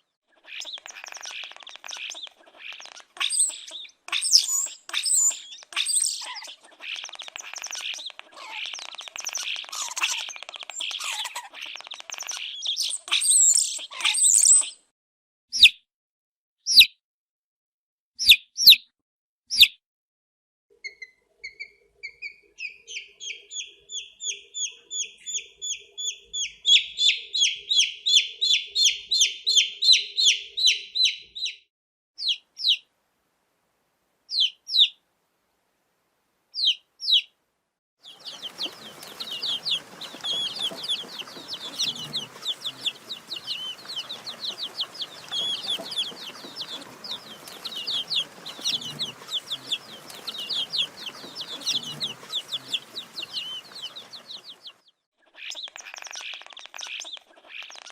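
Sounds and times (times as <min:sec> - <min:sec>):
baby chicks peeping: 0:00.4 - 0:14.7, 0:20.8 - 0:31.6, 0:32.2 - 0:32.8, 0:34.3 - 0:35.0, 0:36.6 - 0:37.3, 0:38.0 - 0:57.9
background hiss: 0:38.0 - 0:54.7.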